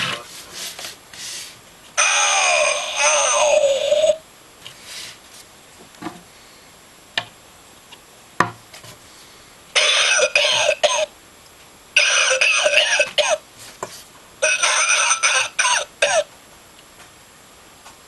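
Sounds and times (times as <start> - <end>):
recorded coughing fits: 9.8 - 11.1, 12.0 - 13.4, 14.4 - 16.3.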